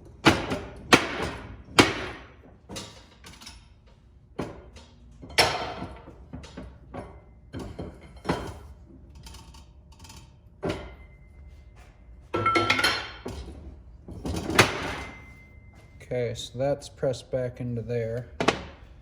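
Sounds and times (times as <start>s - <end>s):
metal clanks and knocks: 12.3s - 15.5s.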